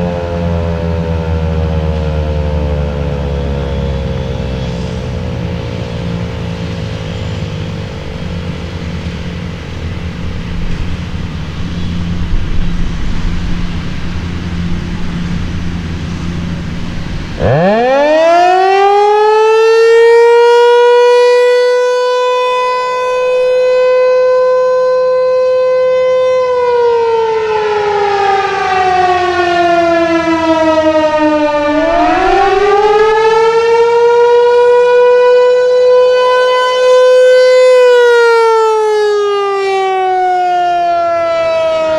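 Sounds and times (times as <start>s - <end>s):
warning siren wailing: 0.0s - 41.9s
low rumble: 30.6s - 35.1s.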